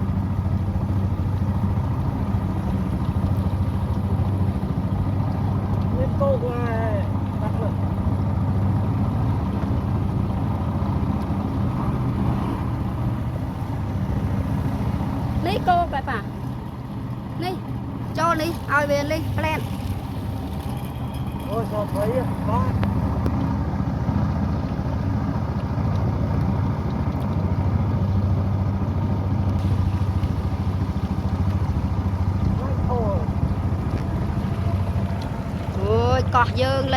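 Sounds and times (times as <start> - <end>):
motorboat engine humming: 0.0 - 36.9.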